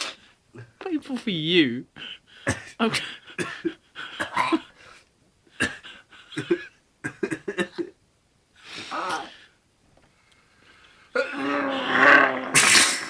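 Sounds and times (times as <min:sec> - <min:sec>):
man sneezing: 0:12.6 - 0:13.0.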